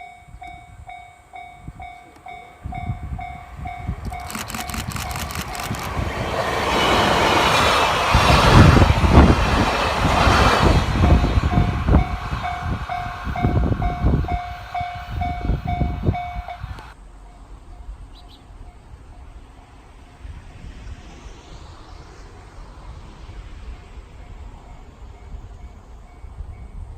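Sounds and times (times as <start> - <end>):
crossing alarm bell dinging: 0.0 - 5.4, 11.0 - 19.8
train rumbling past: 0.0 - 26.9.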